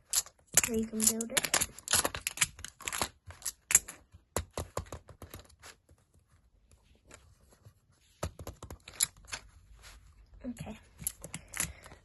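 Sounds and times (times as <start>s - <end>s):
plastic pieces clicking: 0.0s - 5.5s, 8.5s - 9.4s, 10.9s - 12.0s.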